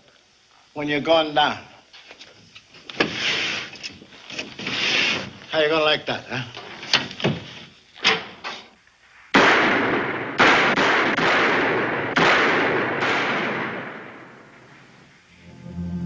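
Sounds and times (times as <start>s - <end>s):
volley of gunfire: 9.4s - 14.5s.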